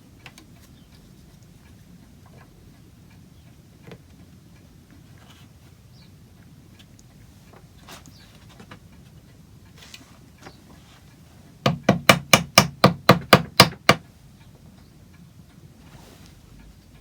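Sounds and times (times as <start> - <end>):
hammer striking wood: 11.6 - 14.0.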